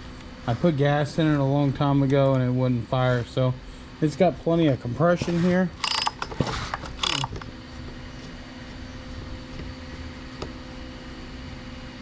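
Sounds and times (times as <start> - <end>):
chainsaw starter cord pulled: 5.8 - 7.5
click: 7.0 - 7.5.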